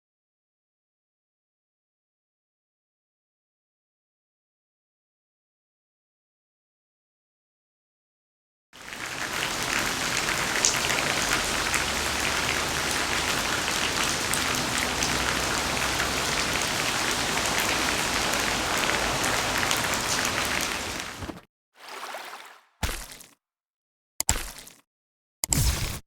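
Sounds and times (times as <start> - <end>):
rain drops ticking on surface: 8.8 - 21.4.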